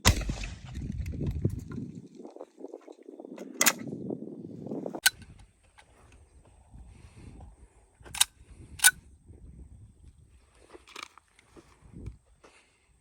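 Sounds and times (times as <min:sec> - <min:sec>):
gunshots: 0:00.0 - 0:00.9.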